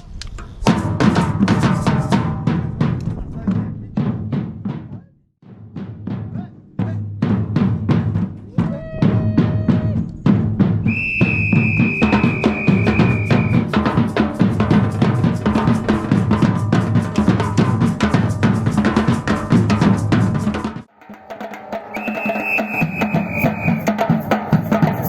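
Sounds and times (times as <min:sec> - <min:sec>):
drum ensemble playing: 0:00.7 - 0:25.0
whistle blast: 0:10.9 - 0:13.6, 0:21.9 - 0:24.0.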